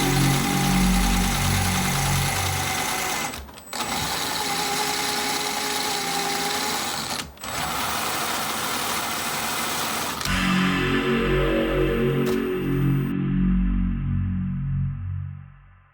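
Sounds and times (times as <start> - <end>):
rc car motor whirring: 0.2 - 10.3.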